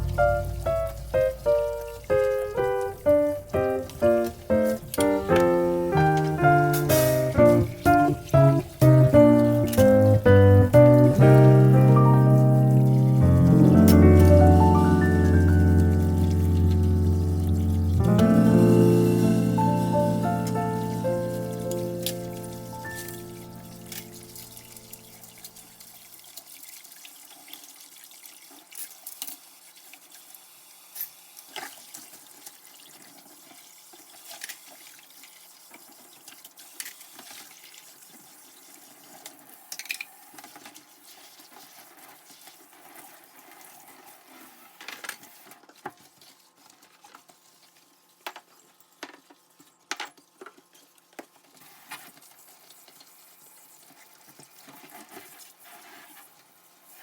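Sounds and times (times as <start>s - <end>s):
water running from tap: 0.0s - 45.4s.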